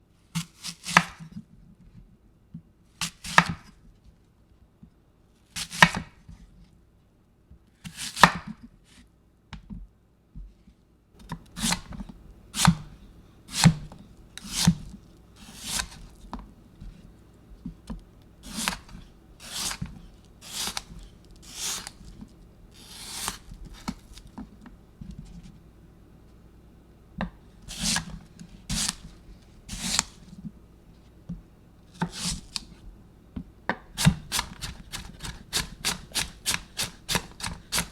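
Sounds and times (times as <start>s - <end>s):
knife slicing: 0.4s - 1.2s, 11.6s - 12.0s, 12.6s - 12.9s, 13.5s - 16.2s, 18.4s - 22.2s, 22.8s - 24.3s, 27.7s - 28.1s, 28.7s - 29.1s, 29.7s - 30.2s, 31.9s - 32.7s, 33.9s - 37.9s.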